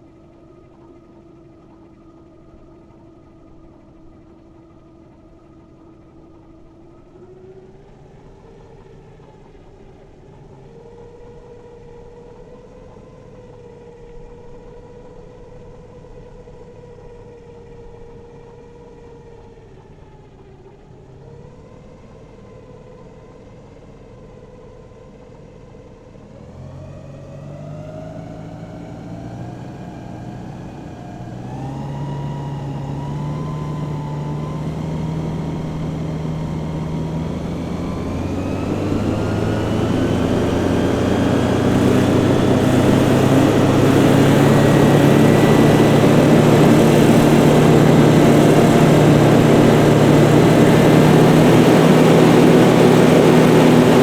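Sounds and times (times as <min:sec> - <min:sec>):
hovercraft engine whining: 0:26.4 - 0:54.0.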